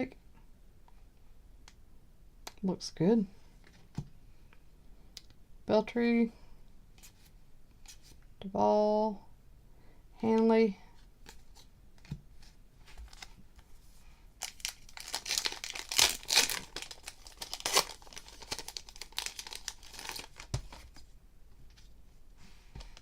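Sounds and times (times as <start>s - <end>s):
wrapper being torn and crinkled: 14.4s - 20.6s.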